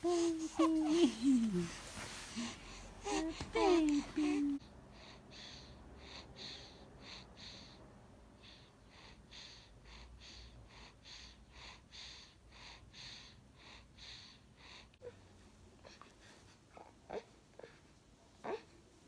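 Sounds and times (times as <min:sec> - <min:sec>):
baby's snuffly breathing: 0:00.0 - 0:07.8.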